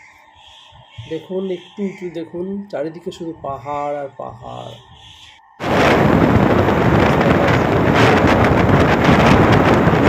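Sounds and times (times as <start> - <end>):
wind buffeting microphone: 3.1 - 10.0.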